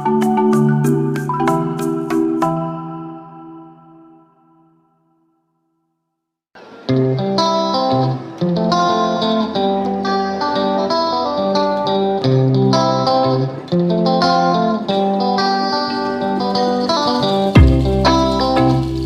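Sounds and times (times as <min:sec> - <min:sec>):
plucked guitar melody: 0:00.0 - 0:04.0, 0:06.6 - 0:19.0
bass line: 0:17.6 - 0:19.0.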